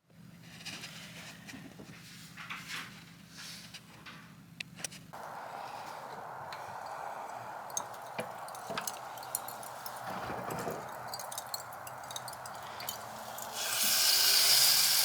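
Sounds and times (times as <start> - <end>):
charcoal burning with crackles: 5.2 - 15.0.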